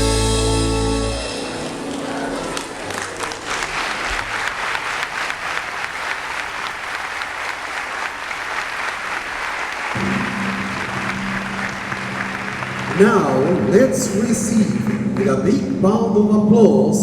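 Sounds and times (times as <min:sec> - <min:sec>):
audience applauding: 0:00.0 - 0:15.7.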